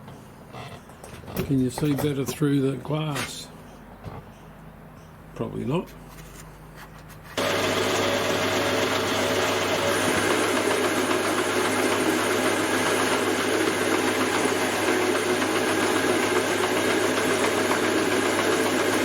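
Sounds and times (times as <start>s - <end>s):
metal lathe cutting: 7.4s - 19.0s.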